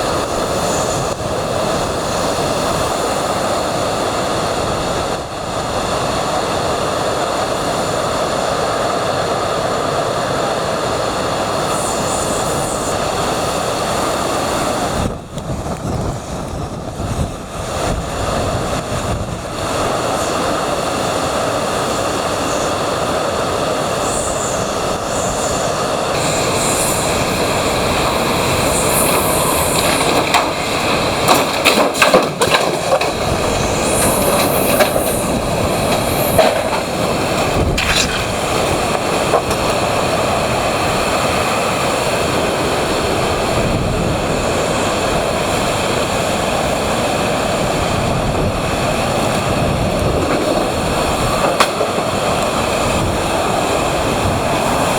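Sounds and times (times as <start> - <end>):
high wind whistles: 0.0 - 54.9
hurricane wind blowing hard: 0.0 - 54.9
sharp knocks and rattles: 29.7 - 39.8.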